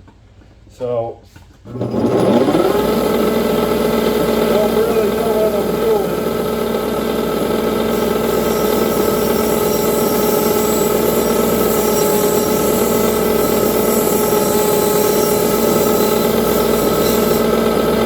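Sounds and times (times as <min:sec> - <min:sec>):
bench grinder motor humming: 0:01.7 - 0:18.0
wire brush wheel hissing: 0:07.6 - 0:18.0.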